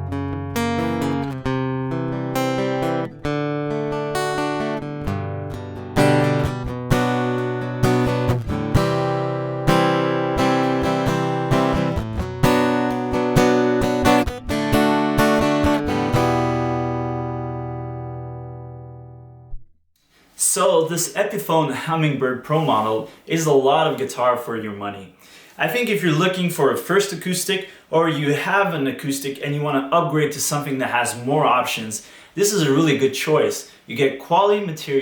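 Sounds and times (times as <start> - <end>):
acoustic guitar strumming and picking: 0.0 - 19.5.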